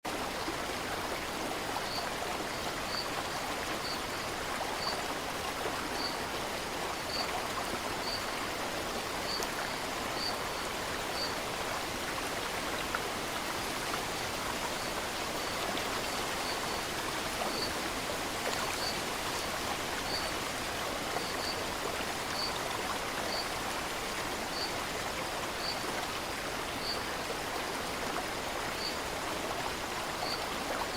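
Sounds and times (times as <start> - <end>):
stream rushing: 0.1 - 30.9.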